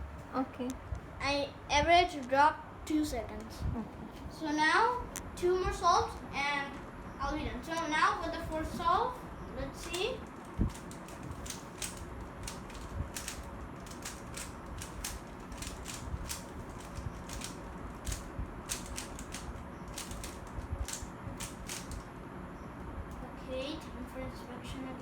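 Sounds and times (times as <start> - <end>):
plastic puzzle cube layers clicking: 9.8 - 22.0.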